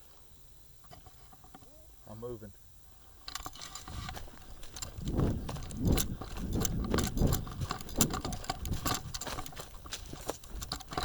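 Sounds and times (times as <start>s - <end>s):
clicks and rattles: 3.3s - 11.0s
running footsteps: 3.6s - 11.0s.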